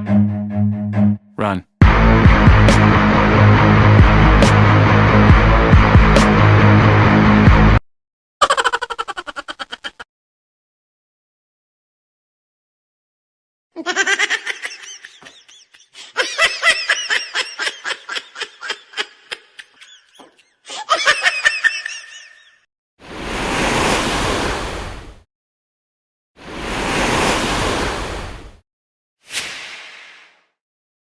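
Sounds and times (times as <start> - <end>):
rapid cackling laughter: 8.4 - 10.1, 13.8 - 22.6.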